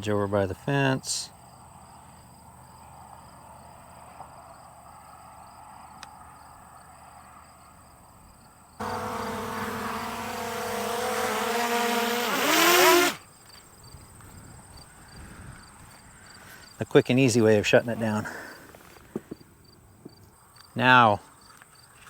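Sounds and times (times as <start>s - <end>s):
crickets chirping: 1.3s - 22.0s
drone motors whining: 8.8s - 13.2s.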